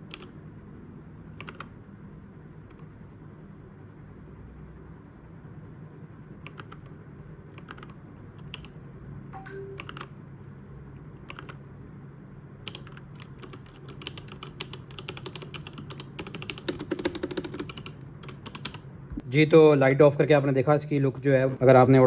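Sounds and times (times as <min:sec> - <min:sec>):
mechanical keyboard typing: 0:00.0 - 0:00.4, 0:01.4 - 0:01.7, 0:06.4 - 0:08.8, 0:09.5 - 0:10.1, 0:11.2 - 0:11.6, 0:12.6 - 0:18.8.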